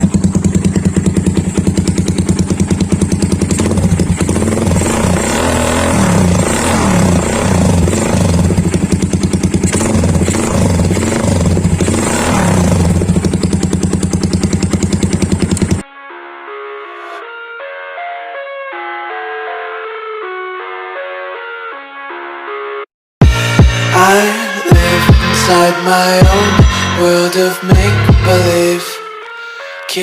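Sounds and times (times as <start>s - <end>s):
motorcycle engine idling: 0.0s - 15.8s, 26.2s - 27.0s
motorcycle throttle blips: 0.0s - 15.8s.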